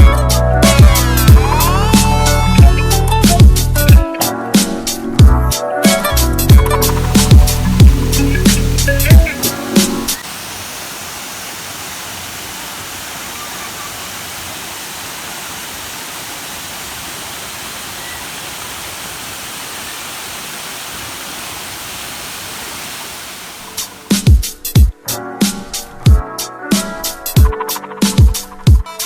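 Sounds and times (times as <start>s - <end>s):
waterfall rushing: 6.9s - 24.4s.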